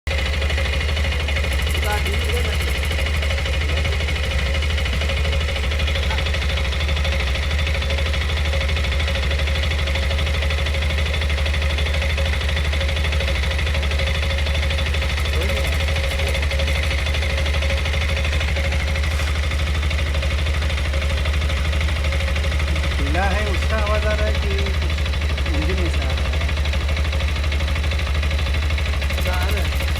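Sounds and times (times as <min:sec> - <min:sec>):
motorcycle engine idling: 0:00.0 - 0:29.9.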